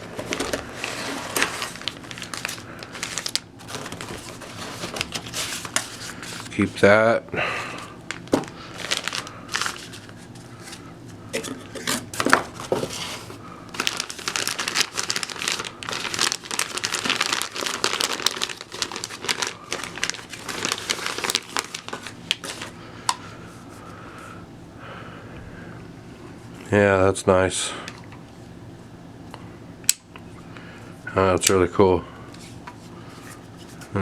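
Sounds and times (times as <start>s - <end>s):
packaging crinkling: 0.0s - 6.8s, 7.6s - 23.2s.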